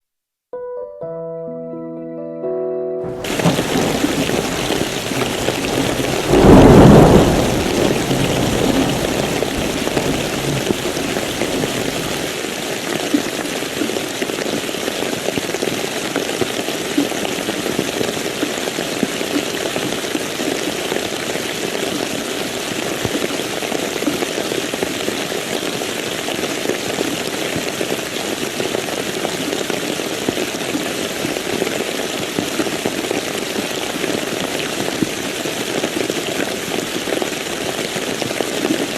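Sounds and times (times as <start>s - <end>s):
thunder clap rumbling: 3.1s - 12.3s
steady rain falling: 3.1s - 38.9s.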